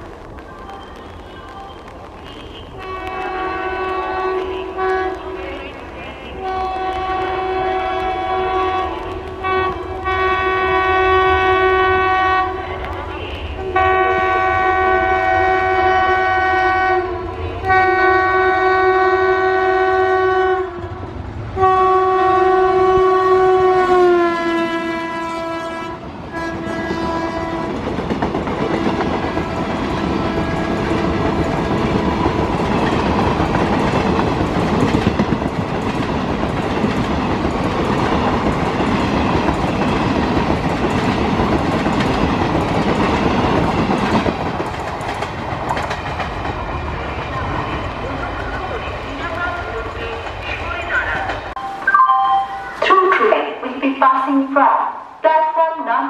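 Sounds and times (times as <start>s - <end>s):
locomotive air horn blasts: 2.8s - 5.3s, 6.4s - 12.6s, 13.6s - 20.8s, 21.6s - 27.7s
train wheels clattering over rails: 27.4s - 47.7s.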